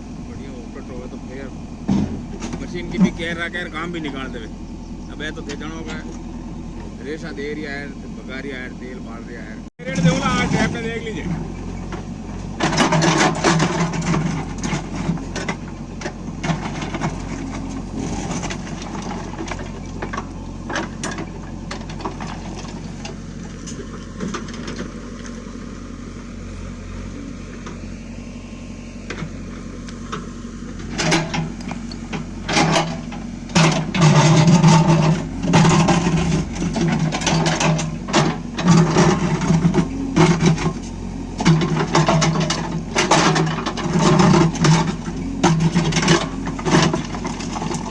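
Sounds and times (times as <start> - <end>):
diesel engine under load: 0.0 - 47.9
clanks and knocks: 1.8 - 4.4, 9.8 - 25.4, 29.1 - 47.9.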